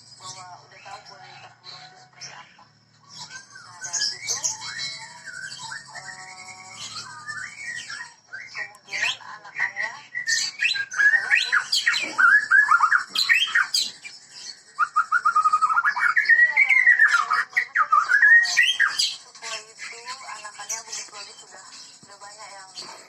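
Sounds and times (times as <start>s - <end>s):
bird singing whistled phrases: 3.1s - 9.2s, 10.1s - 14.0s, 14.7s - 19.2s.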